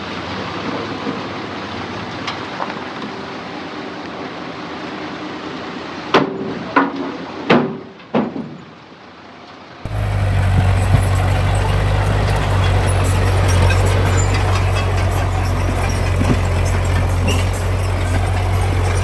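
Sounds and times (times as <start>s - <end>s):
heavy diesel machinery engine droning: 9.9s - 19.0s
sharp ringing clanks: 9.9s - 19.0s.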